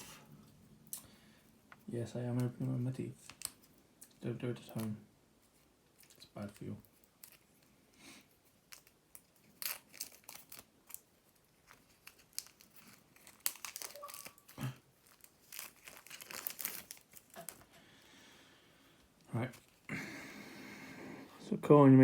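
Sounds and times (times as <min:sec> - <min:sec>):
plastic wrap crinkling and tearing: 0:04.6 - 0:07.7, 0:08.4 - 0:17.7.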